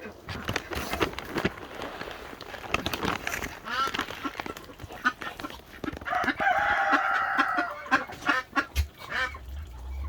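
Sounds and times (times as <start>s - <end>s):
chickens clucking: 3.2s - 10.0s
rooster crowing: 6.1s - 7.8s.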